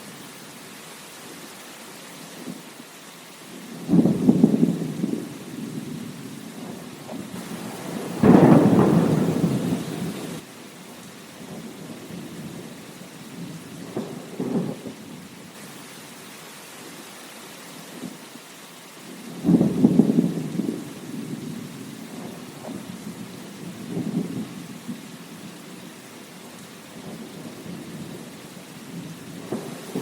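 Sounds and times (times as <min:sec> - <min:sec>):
rain falling: 0:00.0 - 0:30.0
thunder cracking and rumbling: 0:03.7 - 0:10.4, 0:13.3 - 0:15.1, 0:19.3 - 0:25.2, 0:27.0 - 0:30.0.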